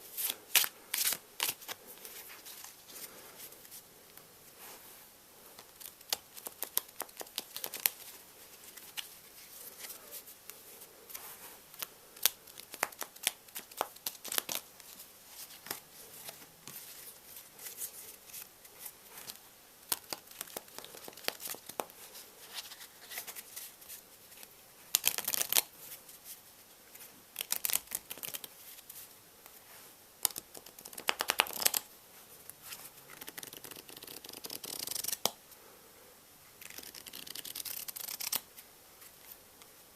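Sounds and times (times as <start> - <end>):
playing cards shuffling: 5.6 - 23.8, 24.9 - 26.4, 27.0 - 29.0, 30.2 - 31.8, 32.7 - 35.3, 36.6 - 38.4.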